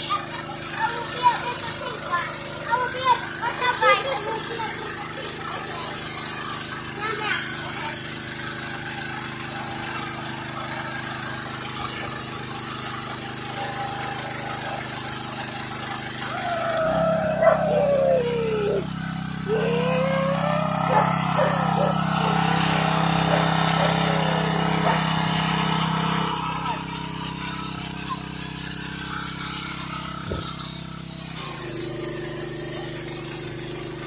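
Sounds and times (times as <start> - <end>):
pressure washer motor humming: 0.0 - 34.0
dog whining and howling: 16.3 - 25.1.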